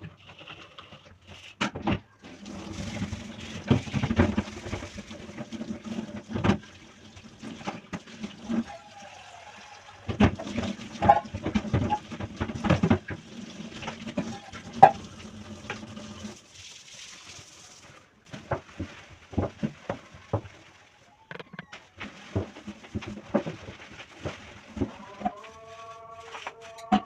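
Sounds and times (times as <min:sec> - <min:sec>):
water running in a sink: 0:02.1 - 0:21.2, 0:21.8 - 0:27.0
dishes and utensils clinking: 0:26.4 - 0:27.0.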